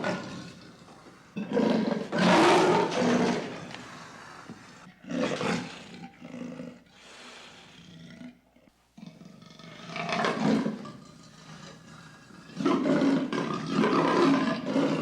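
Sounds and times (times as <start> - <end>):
lion roaring: 1.4 - 3.9, 9.0 - 15.0.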